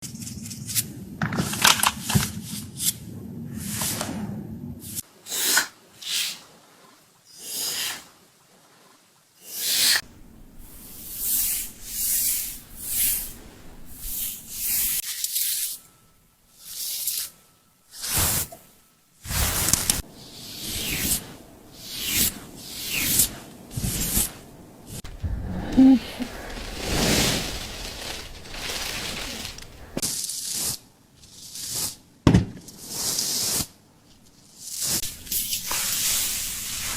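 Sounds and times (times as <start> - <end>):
low hum: 23.4 - 30.0.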